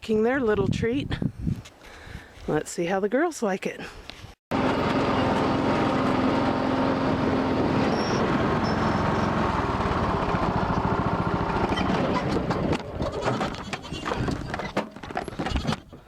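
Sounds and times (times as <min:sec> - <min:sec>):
vehicle engine running: 0:04.5 - 0:13.0.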